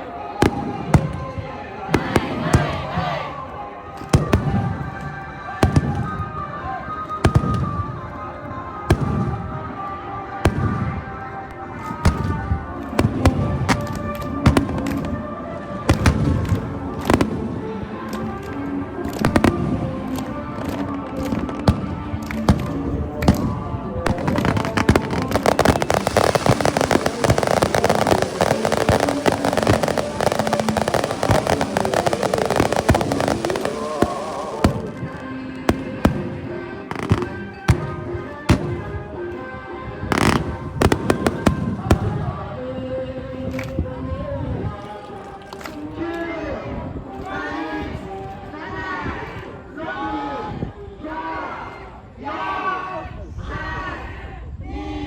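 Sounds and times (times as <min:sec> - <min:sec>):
music: 0:00.0 - 0:55.0
fireworks bursting with booms: 0:00.4 - 0:03.1, 0:04.1 - 0:05.0, 0:05.6 - 0:06.4, 0:07.2 - 0:08.0, 0:08.9 - 0:09.6, 0:10.4 - 0:11.2, 0:11.8 - 0:17.8, 0:19.2 - 0:39.1, 0:40.1 - 0:42.5.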